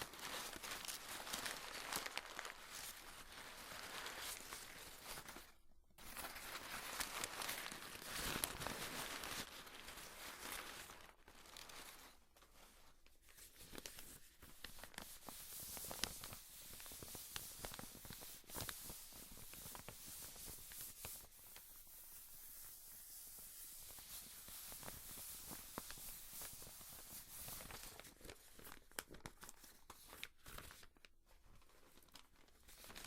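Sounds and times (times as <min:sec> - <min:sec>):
paper tearing and crumpling: 0:00.0 - 0:12.2.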